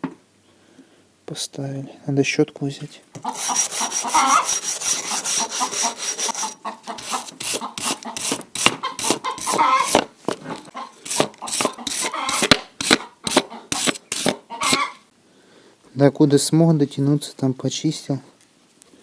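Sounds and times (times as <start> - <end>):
stiff brush scrubbing: 3.3 - 14.8.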